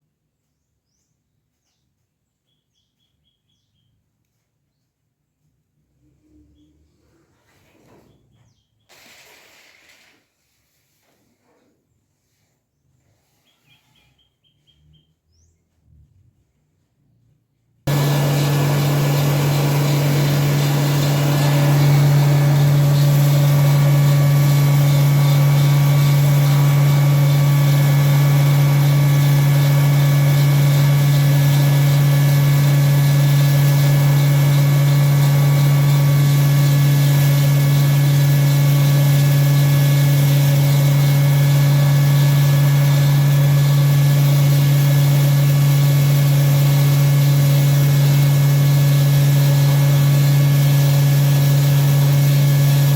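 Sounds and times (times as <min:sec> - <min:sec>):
grinding mill humming: 0:17.9 - 0:52.9.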